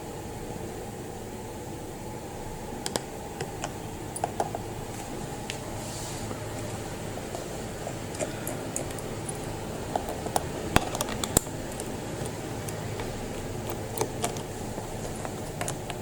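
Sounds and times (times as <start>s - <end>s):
steady low hum: 0.0s - 16.0s
screwdriver clicking on screws: 8.2s - 16.0s.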